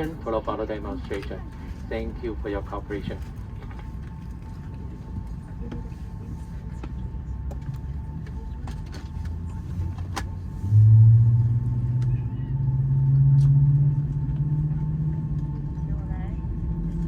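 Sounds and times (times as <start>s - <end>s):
steady rumble: 0.0s - 17.0s
loud hum rising in pitch: 9.0s - 17.0s.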